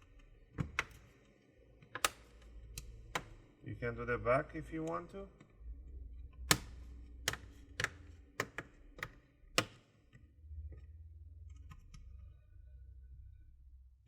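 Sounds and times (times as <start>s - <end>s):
plastic clips snapping: 1.8s - 3.5s, 6.4s - 9.9s.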